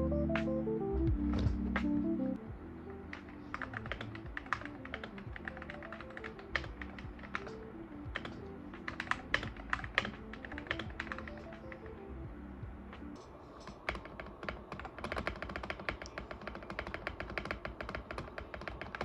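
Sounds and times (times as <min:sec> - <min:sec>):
background music: 0:00.0 - 0:18.1
mechanical keyboard key clacks: 0:13.6 - 0:19.0.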